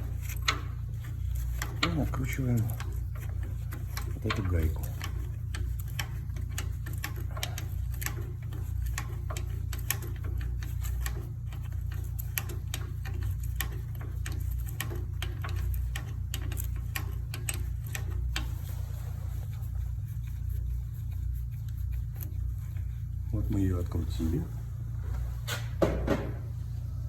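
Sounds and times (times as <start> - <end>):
ratchet wrench clicking: 0.0 - 18.6
steady low hum: 0.0 - 27.0.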